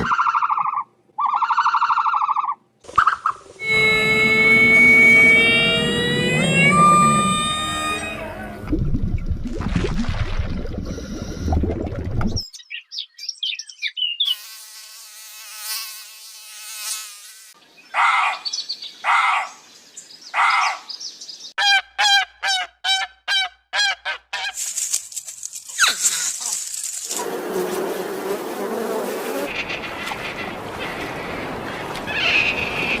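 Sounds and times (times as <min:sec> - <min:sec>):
fowl or geese calls: 0:03.0 - 0:08.6
insect buzzing: 0:03.6 - 0:08.6, 0:14.3 - 0:17.6.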